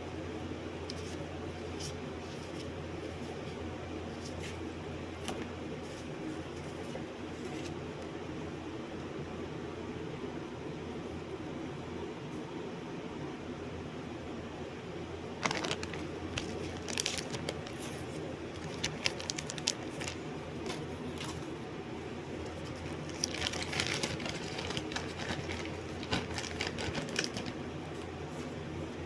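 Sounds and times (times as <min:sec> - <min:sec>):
steady low hum: 0:00.0 - 0:29.0.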